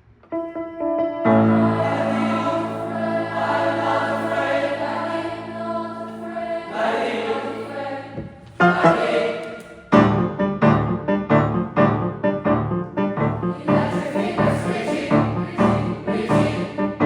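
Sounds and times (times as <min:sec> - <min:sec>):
choir singing held chords: 0:01.2 - 0:09.9, 0:13.5 - 0:17.0.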